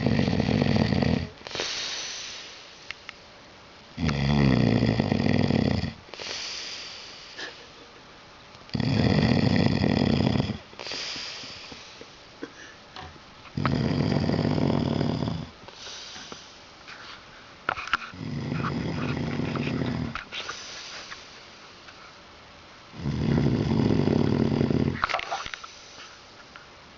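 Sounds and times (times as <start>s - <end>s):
man snoring heavily: 0.0s - 1.4s, 4.0s - 6.0s, 8.7s - 11.4s, 13.6s - 15.6s, 18.1s - 20.2s, 22.9s - 25.0s
quiet breaths: 0.0s - 3.3s, 3.9s - 26.7s.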